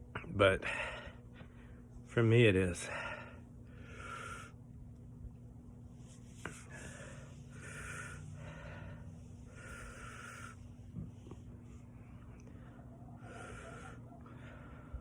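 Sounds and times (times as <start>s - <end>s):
man breathing hard: 0.6s - 2.0s, 2.8s - 4.7s, 6.4s - 15.0s.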